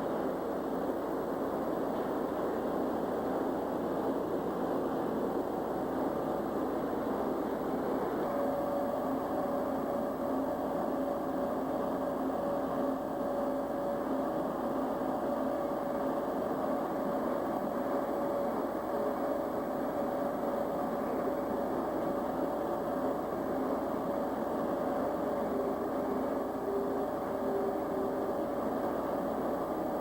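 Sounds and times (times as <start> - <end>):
high steady tone: 0.0 - 30.0
machinery whirring: 0.0 - 30.0.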